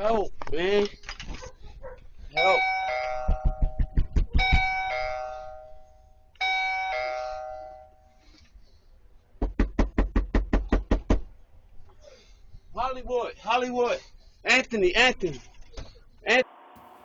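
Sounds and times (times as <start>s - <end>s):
doorbell ding-dong chime: 2.4s - 5.8s, 6.4s - 8.0s.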